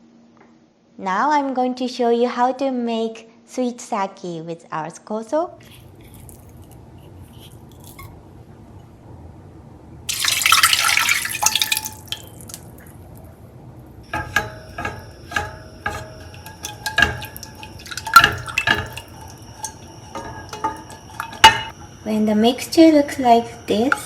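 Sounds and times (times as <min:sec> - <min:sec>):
utensil clinking against a pan: 0:05.6 - 0:08.2, 0:10.1 - 0:13.1, 0:14.0 - 0:24.0
water poured into a pan: 0:10.1 - 0:13.2, 0:14.1 - 0:22.0.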